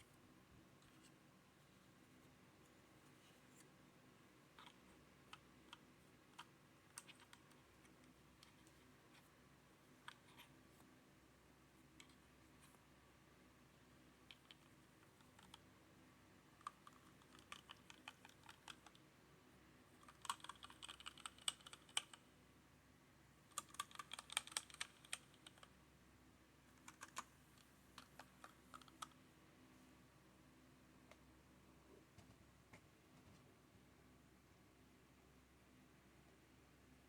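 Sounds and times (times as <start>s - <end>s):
mechanical keyboard keys clacking: 20.0s - 22.2s, 23.5s - 25.7s.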